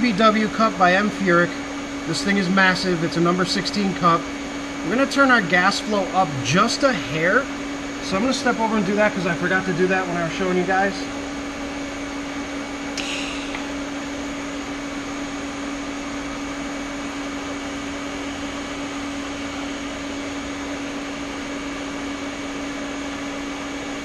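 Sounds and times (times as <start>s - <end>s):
welder humming: 0.0s - 18.3s.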